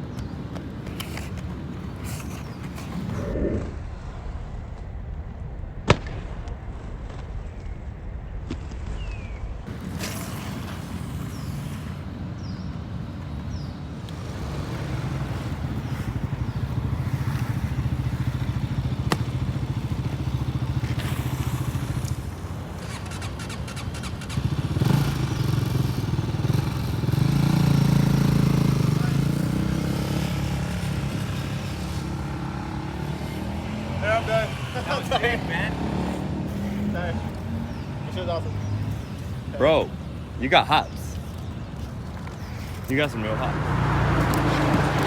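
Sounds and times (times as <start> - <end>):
skate clicks and knocks: 0.0 - 3.2, 44.2 - 45.0
skate wheels rolling on pavement: 0.0 - 5.3, 7.0 - 45.0.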